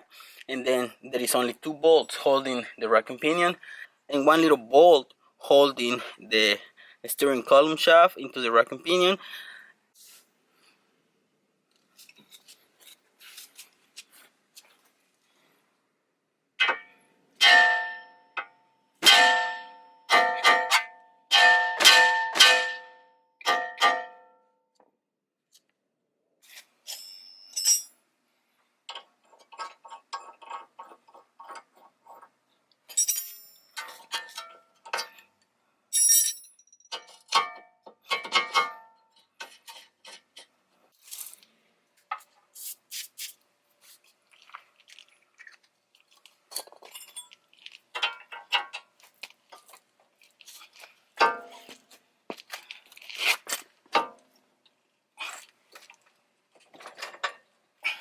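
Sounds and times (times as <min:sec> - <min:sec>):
metal hand tools clinking: 0:26.9 - 0:28.0, 0:32.9 - 0:35.1, 0:36.0 - 0:38.9, 0:46.5 - 0:48.8.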